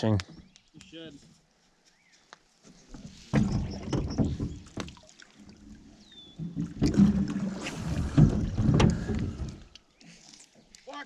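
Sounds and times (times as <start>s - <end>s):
water sloshing against boat hull: 2.7s - 10.7s.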